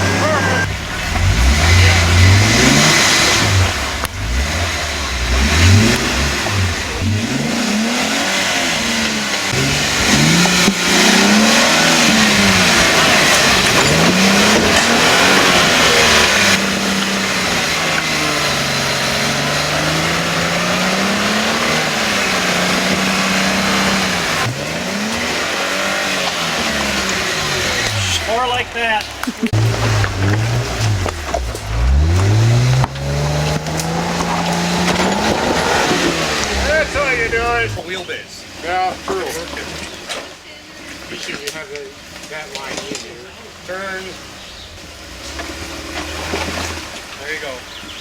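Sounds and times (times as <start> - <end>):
off-road engine revving: 0.0 - 48.0
low rumble: 27.5 - 37.9.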